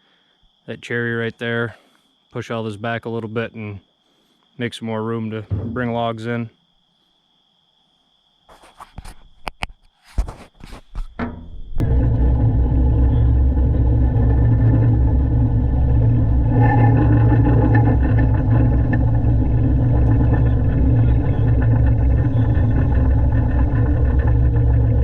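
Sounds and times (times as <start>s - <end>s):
diesel engine droning: 11.8s - 25.0s.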